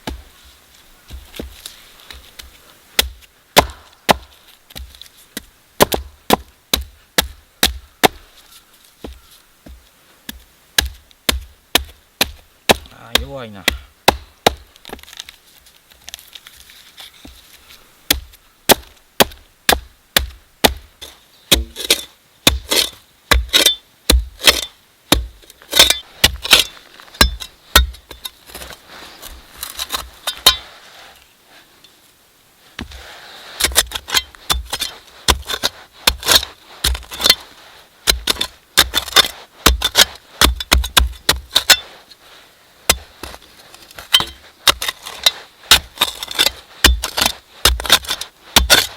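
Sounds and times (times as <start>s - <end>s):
hand tool striking wood: 3.0s - 8.2s, 9.0s - 15.0s, 21.5s - 28.7s, 33.6s - 37.4s, 38.1s - 41.9s, 44.0s - 48.9s.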